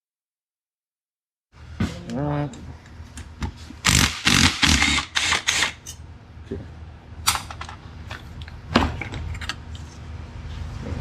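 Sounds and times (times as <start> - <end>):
tools and parts clattering: 7.3 - 9.8.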